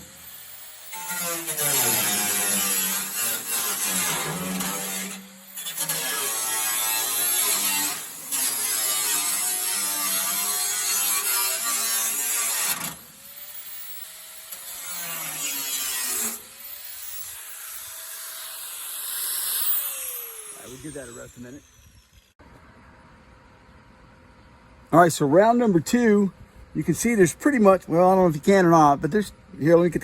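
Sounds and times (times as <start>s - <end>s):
die grinder cutting sheet metal: 0.0s - 22.3s.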